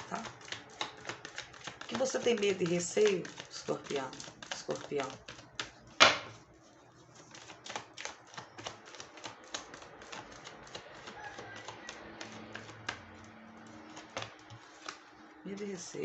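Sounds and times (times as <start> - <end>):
faint background music: 0.0 - 5.6, 11.4 - 16.0
cards clicking and tapping: 0.0 - 6.4, 7.2 - 15.2.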